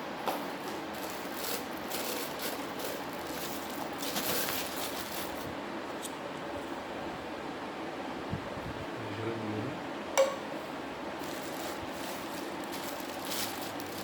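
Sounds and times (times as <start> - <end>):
packaging rustling and crinkling: 0.6 - 5.5, 11.2 - 14.0.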